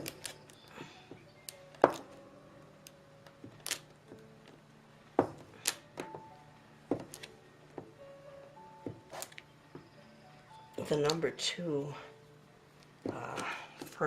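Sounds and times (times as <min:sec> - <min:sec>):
clay knocking on hard surface: 0:05.2 - 0:06.2.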